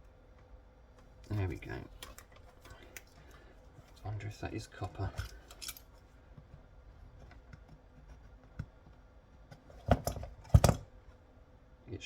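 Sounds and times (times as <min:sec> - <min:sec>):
knife scraping cable insulation: 0:06.5 - 0:09.8
knocks and rustles: 0:09.5 - 0:11.0.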